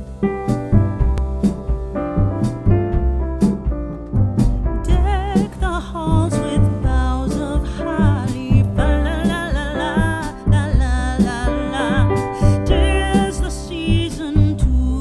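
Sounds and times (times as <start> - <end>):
music with bass and keyboard: 0.0 - 15.0
person singing with vibrato: 4.9 - 15.0.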